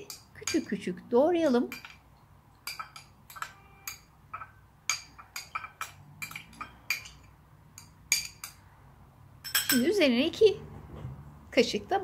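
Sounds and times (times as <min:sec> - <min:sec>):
utensil clinking against container: 0:01.7 - 0:08.6, 0:09.4 - 0:09.9.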